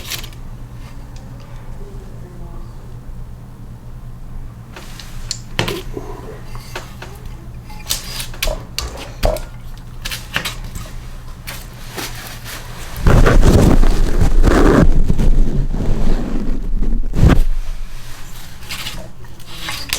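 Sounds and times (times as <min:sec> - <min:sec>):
metal engine parts clinking: 0:05.6 - 0:11.7.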